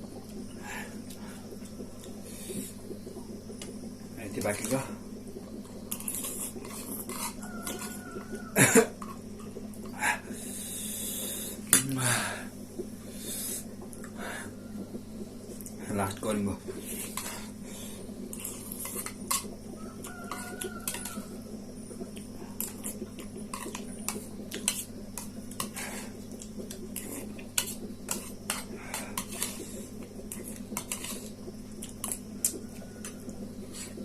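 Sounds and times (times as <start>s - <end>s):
steady low hum: 0.0s - 34.0s
fork clicking against a bowl: 20.3s - 21.2s.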